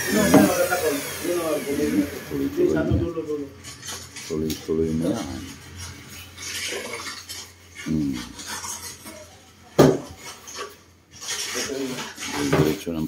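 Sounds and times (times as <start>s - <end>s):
wooden boards rubbing on table: 4.9s - 13.0s.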